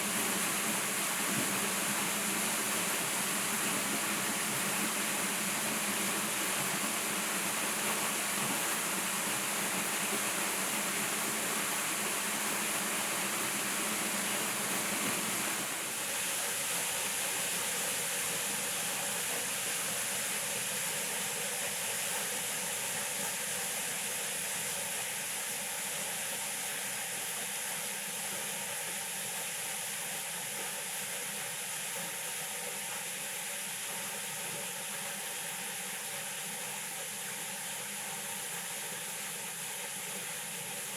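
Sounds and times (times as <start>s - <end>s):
stream water rushing: 0.0s - 16.2s.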